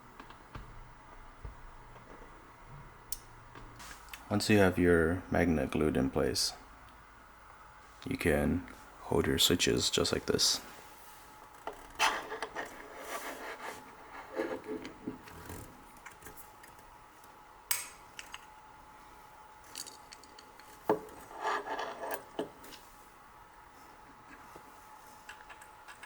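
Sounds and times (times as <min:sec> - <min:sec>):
small hard parts scraping: 0:19.7 - 0:22.8.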